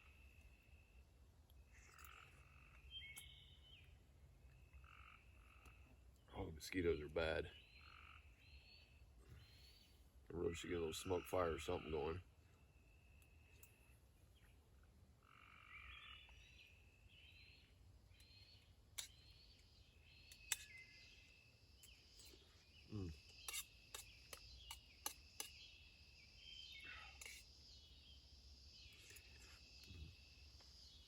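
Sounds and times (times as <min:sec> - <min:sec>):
animal chirps and croaks: 0:01.7 - 0:03.6, 0:22.2 - 0:25.6.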